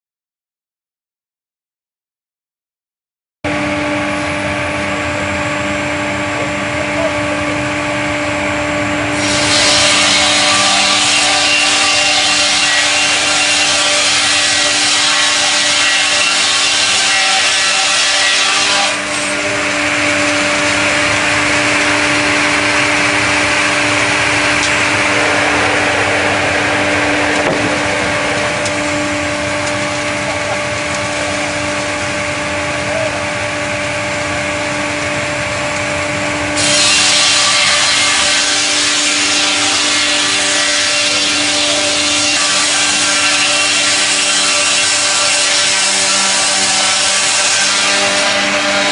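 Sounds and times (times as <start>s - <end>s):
sawing machine humming: 3.5s - 48.9s
blade sawing through log: 9.1s - 32.3s.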